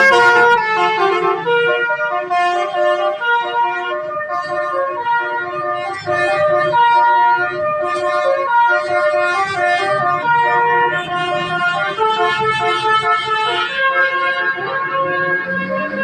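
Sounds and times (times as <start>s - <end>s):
multi-tone air horn playing tune: 0.0s - 5.6s.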